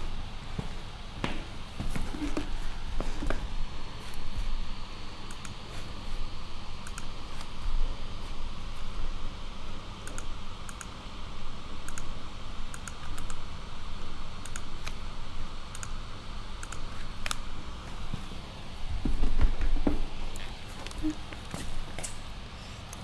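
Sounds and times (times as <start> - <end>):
light clicks: 5.2 - 5.6, 6.8 - 7.5, 10.0 - 11.0, 11.9 - 12.1, 12.7 - 13.4, 14.4 - 15.0, 15.7 - 16.0, 16.6 - 17.5.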